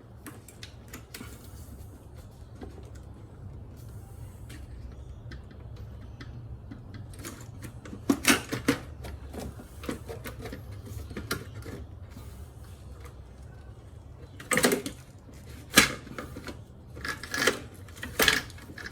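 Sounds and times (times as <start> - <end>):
low steady hum: 0.0 - 18.9
tools clicking and knocking: 4.9 - 11.9, 14.3 - 18.9.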